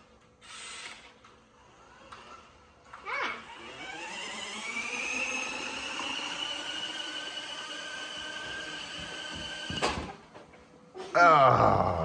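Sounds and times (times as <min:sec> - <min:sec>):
toy electric motor whining: 0:00.4 - 0:09.6.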